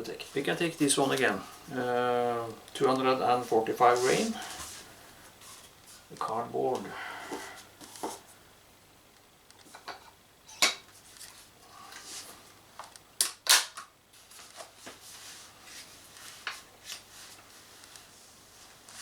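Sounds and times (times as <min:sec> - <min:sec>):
soft rustling: 0:00.0 - 0:08.4, 0:14.1 - 0:19.0.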